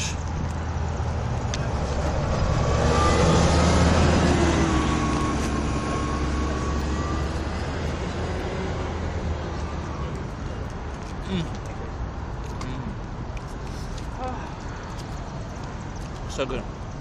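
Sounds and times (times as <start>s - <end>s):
vehicle passing by: 0.0s - 10.7s.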